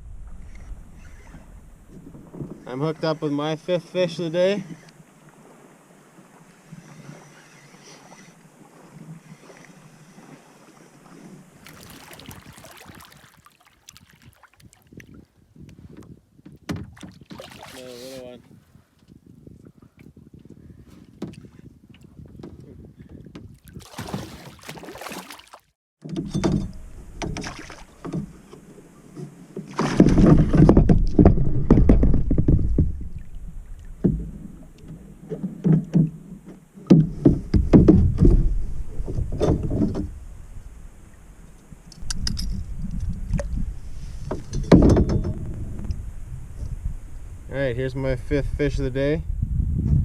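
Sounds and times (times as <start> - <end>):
water splashing and sloshing: 4.8 - 18.6, 21.0 - 46.0
knocks on kayak: 36.9 - 38.5.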